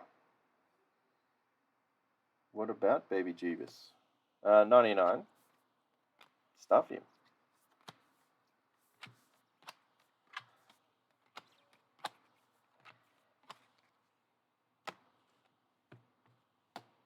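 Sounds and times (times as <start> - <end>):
cards clicking and snapping: 7.2 - 8.2, 8.9 - 14.0, 14.8 - 17.0.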